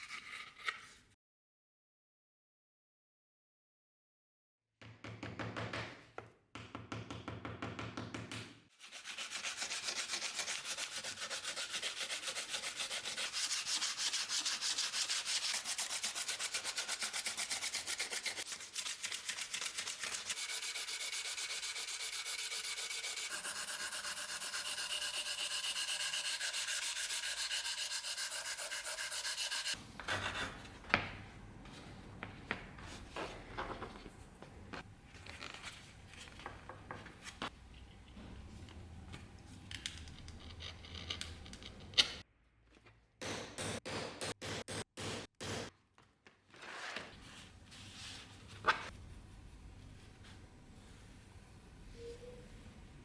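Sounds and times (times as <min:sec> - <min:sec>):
sanding strokes: 0:08.8 - 0:29.8.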